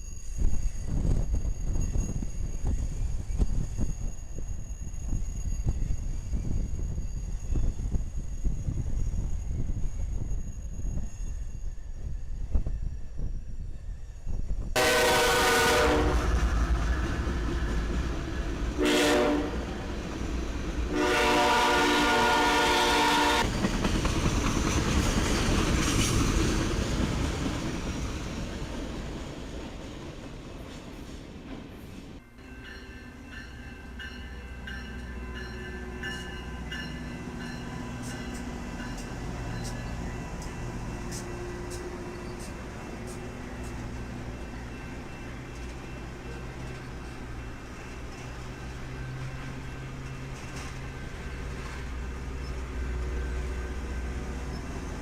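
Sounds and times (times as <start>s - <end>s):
low train rumble: 0.0s - 55.0s
locomotive air horn blasts: 14.8s - 16.5s, 18.8s - 19.8s, 20.9s - 23.5s.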